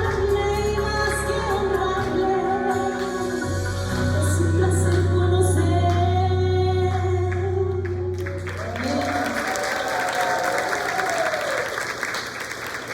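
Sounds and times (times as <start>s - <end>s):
audience applause: 8.1s - 12.9s.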